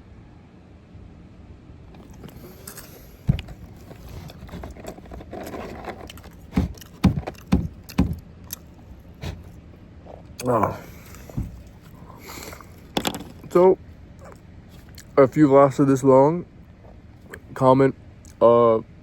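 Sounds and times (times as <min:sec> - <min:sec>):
low thumps: 0:03.2 - 0:04.9, 0:11.3 - 0:11.9
hard thump: 0:03.2 - 0:08.2, 0:11.3 - 0:11.8
chewing food: 0:03.8 - 0:12.9, 0:14.2 - 0:15.2.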